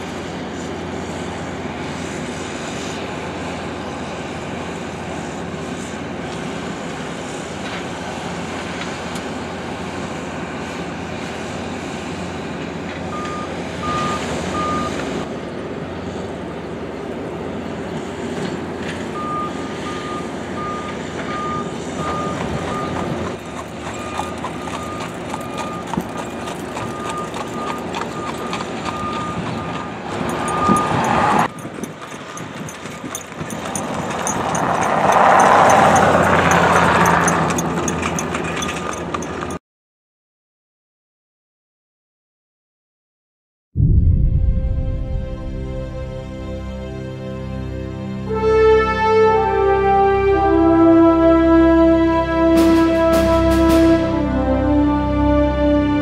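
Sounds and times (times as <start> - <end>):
diesel engine running: 0.0 - 39.6, 43.8 - 56.0
backup alarm beeping: 13.2 - 15.0, 19.2 - 23.1, 24.0 - 32.5.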